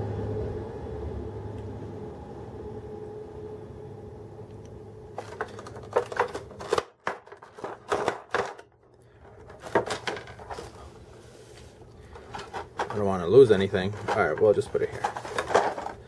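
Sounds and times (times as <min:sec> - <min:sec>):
steady low hum: 0:00.0 - 0:16.0
plastic packaging crinkling: 0:05.1 - 0:16.0.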